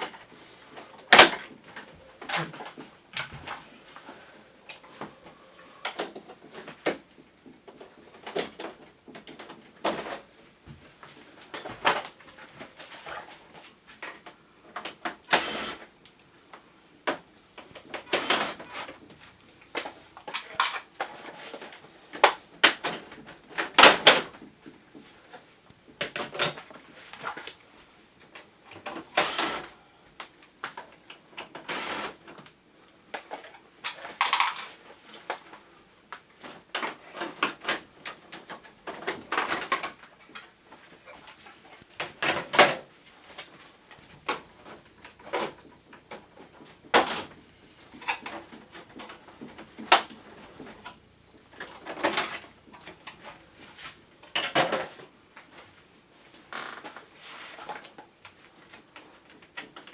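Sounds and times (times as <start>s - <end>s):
plastic parts clicking and scraping: 19.7s - 23.1s, 33.2s - 35.5s.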